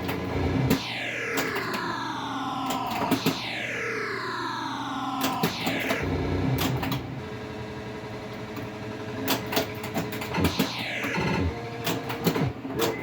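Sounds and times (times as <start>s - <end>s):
electronic game sound effects: 0.3s - 7.2s, 10.2s - 13.0s
descending pitch sweeps: 0.7s - 7.2s
pinball flipper clacks: 9.2s - 13.0s.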